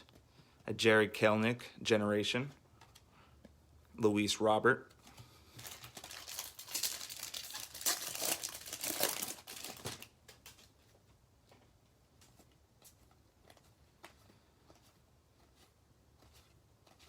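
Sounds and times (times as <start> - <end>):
trading cards and wrapper rustling: 4.9 - 10.8.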